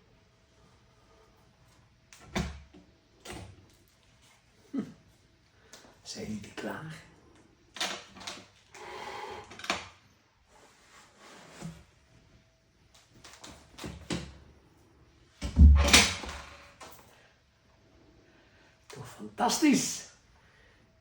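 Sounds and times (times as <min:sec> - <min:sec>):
heavy thump: 0:15.4 - 0:16.6.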